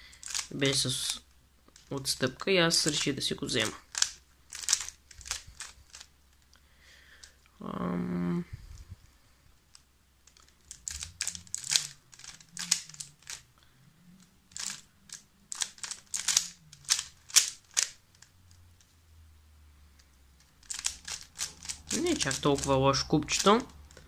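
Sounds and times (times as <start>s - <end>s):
speed cube plastic clicks: 0.1s - 6.5s, 9.7s - 13.5s, 14.2s - 18.4s, 20.0s - 24.0s.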